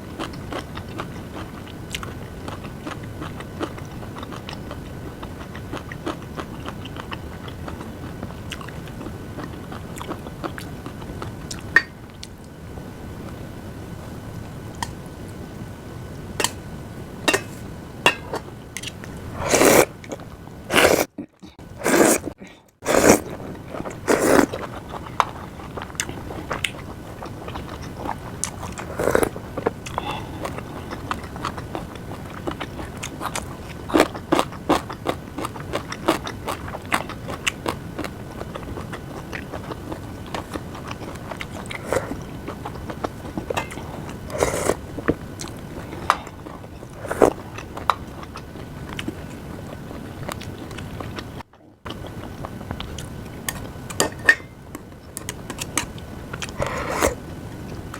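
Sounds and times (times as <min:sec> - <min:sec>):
chewing: 0:00.2 - 0:12.4, 0:21.8 - 0:54.1.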